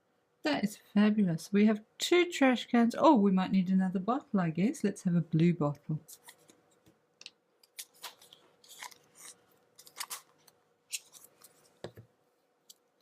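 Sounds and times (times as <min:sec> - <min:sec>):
modelling dough and plastic tub handled: 0:06.0 - 0:13.0.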